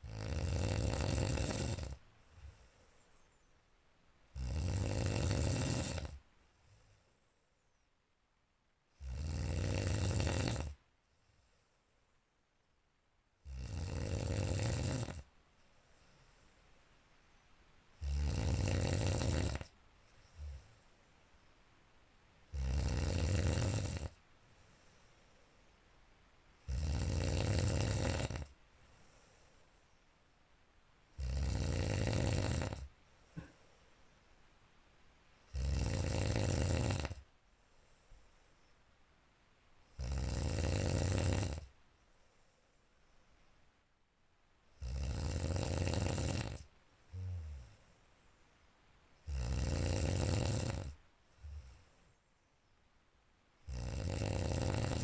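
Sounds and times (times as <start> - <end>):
person snoring loudly: 0.0 - 2.0, 4.4 - 6.2, 9.0 - 10.8, 13.4 - 15.2, 18.0 - 19.7, 22.5 - 24.2, 26.6 - 28.5, 31.2 - 33.5, 35.5 - 37.2, 40.0 - 41.7, 44.8 - 47.8, 49.2 - 51.8, 53.6 - 55.0.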